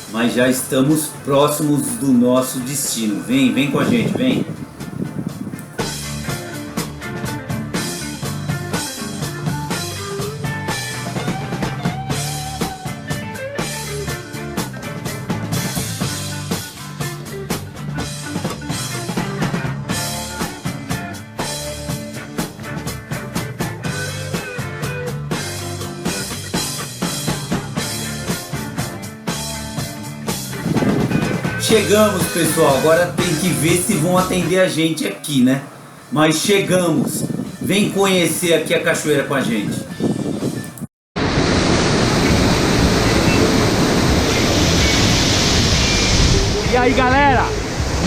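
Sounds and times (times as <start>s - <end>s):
rock music: 5.7s - 34.8s.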